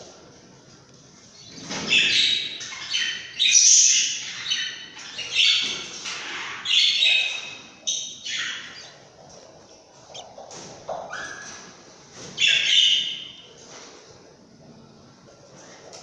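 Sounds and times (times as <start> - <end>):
bird chicks squawking: 1.2 - 11.7.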